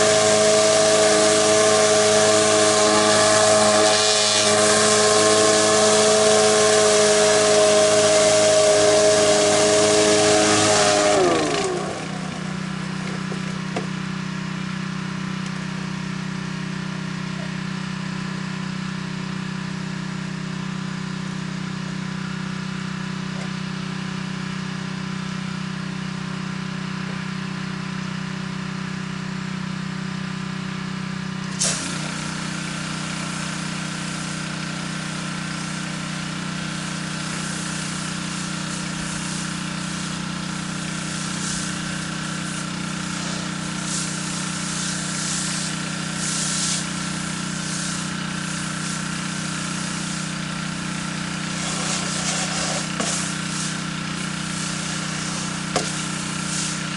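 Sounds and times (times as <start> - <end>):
pressure washer engine running: 0.0 - 56.9
water spray hissing: 31.5 - 34.6, 36.8 - 56.9.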